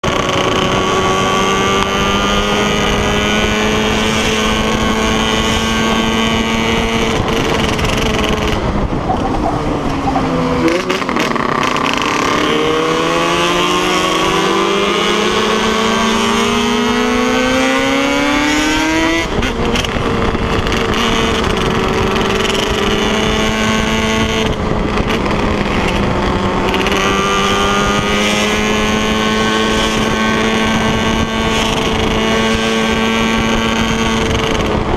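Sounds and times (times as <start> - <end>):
two-stroke motorcycle engine running: 0.0 - 9.5, 10.6 - 34.9.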